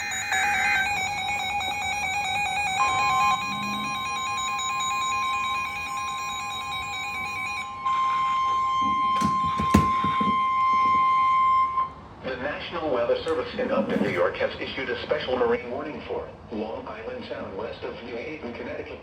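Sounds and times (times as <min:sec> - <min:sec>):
warbling electronic sound: 0:00.0 - 0:06.1
steady high alarm beep: 0:00.0 - 0:12.0
knocks and clicks: 0:08.8 - 0:11.0.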